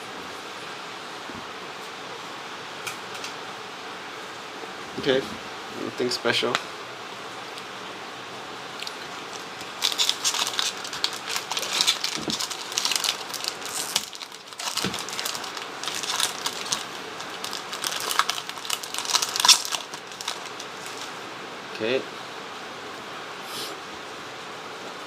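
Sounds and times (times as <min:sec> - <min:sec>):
foil wrapper crinkling and tearing: 0:08.8 - 0:21.2
cards rustling: 0:08.9 - 0:21.2.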